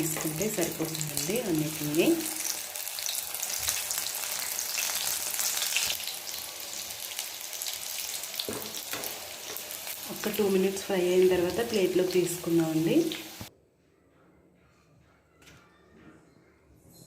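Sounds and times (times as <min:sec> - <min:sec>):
fritters sizzling in hot oil: 0:00.0 - 0:13.5.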